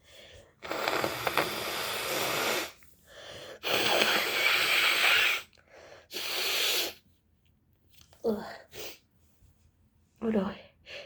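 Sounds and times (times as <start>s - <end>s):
woman blowing her nose: 0.6s - 2.8s, 3.6s - 7.0s.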